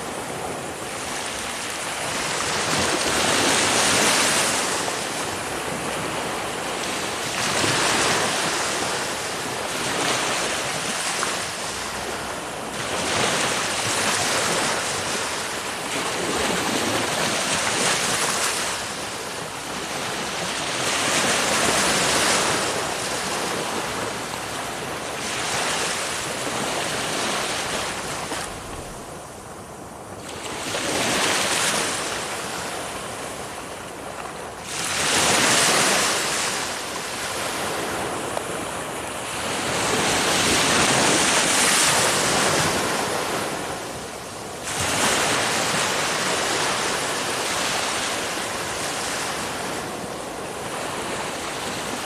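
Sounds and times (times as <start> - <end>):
ocean waves breaking on shore: 0.0 - 52.0.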